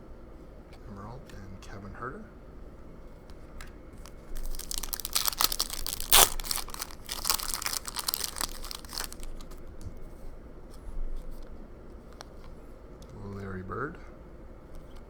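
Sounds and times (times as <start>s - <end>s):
plastic wrapper tearing and crinkling: 4.3s - 9.6s.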